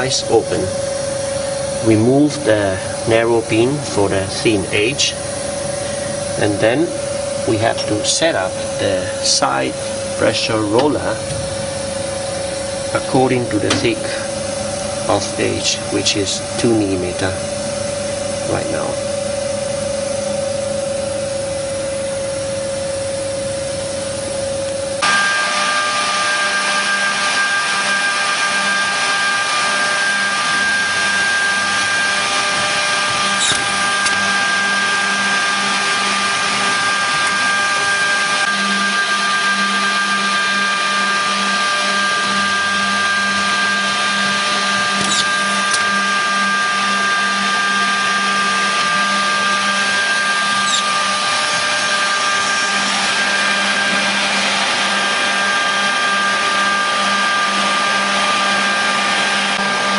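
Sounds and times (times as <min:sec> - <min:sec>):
edge banding machine motor hum: 0:00.0 - 0:59.9
high-pitched machine whine: 0:00.0 - 0:59.9.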